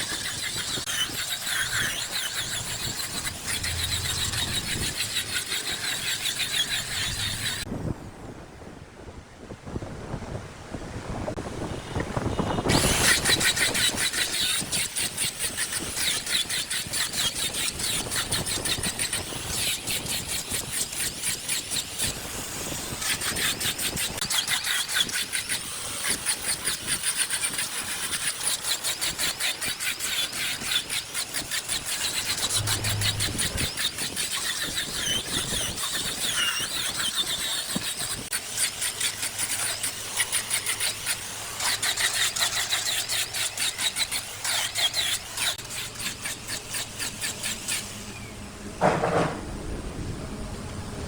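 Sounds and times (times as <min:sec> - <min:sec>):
wood lathe cutting wood: 0:00.0 - 0:07.6, 0:12.7 - 0:26.2, 0:27.1 - 0:48.3
high squeal: 0:00.0 - 0:07.7, 0:31.7 - 0:37.8.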